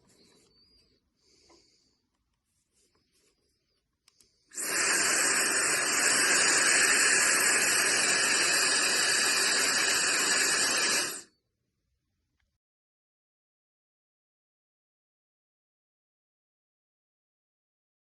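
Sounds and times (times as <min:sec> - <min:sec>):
hair dryer blowing air: 0:04.6 - 0:11.2.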